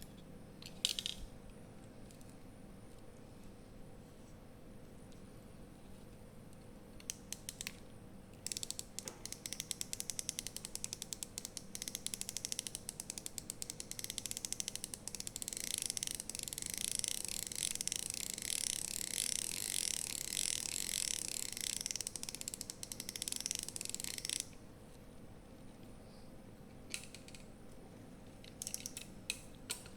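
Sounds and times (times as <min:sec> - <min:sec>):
fishing reel drag clicking: 0:08.4 - 0:24.5.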